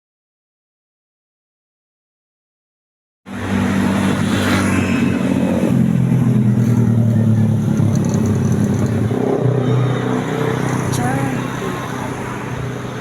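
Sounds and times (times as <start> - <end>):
bus engine low drone: 3.3 - 13.0.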